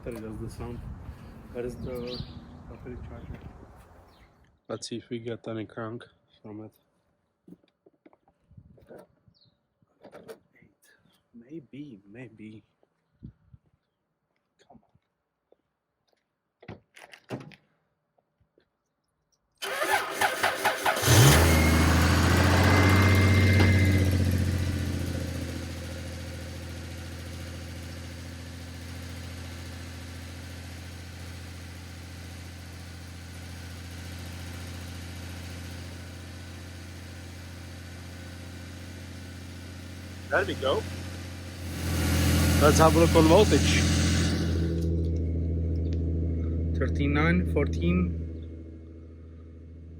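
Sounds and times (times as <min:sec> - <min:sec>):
car engine cranking and idling: 0:00.0 - 0:04.2, 0:19.6 - 0:49.9.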